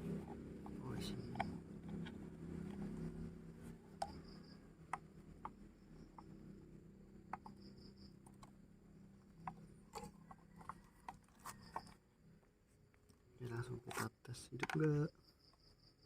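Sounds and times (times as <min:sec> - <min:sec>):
low background hum: 0:00.0 - 0:16.0
plastic charger clicks and taps: 0:14.6 - 0:15.0.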